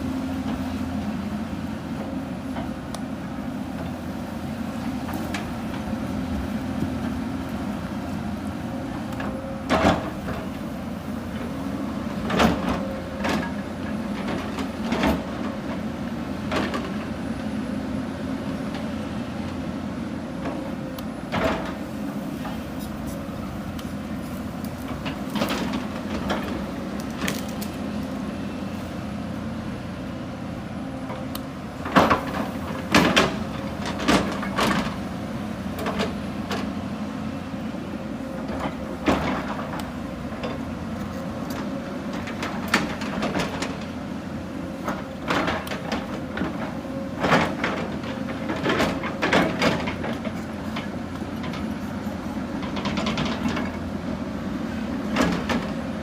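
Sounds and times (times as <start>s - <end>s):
excavator diesel engine running: 0.0s - 56.0s.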